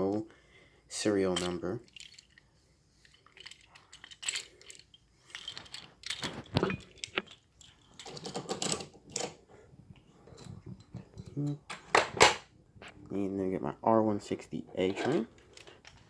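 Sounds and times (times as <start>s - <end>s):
toy train car clicking and rattling: 1.3s - 9.4s, 14.8s - 16.0s.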